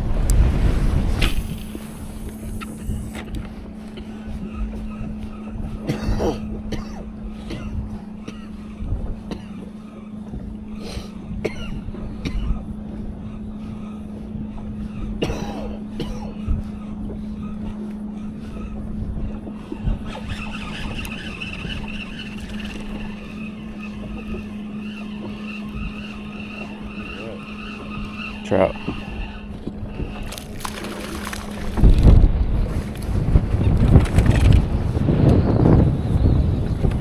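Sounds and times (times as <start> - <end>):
high steady whine: 0.0 - 4.4
low rumble: 0.0 - 9.5, 29.0 - 37.0
boat motor humming: 0.0 - 37.0.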